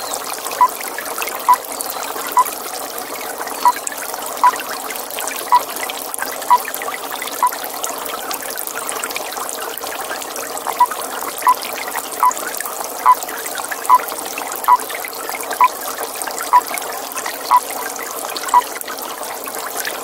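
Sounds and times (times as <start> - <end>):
trickling water hiss: 0.0 - 20.0
toad calling: 12.2 - 12.4.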